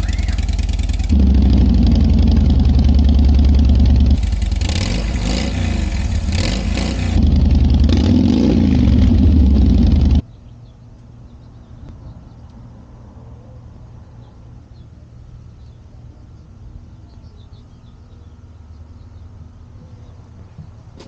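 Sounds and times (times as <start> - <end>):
motorcycle engine revving: 0.0 - 10.2.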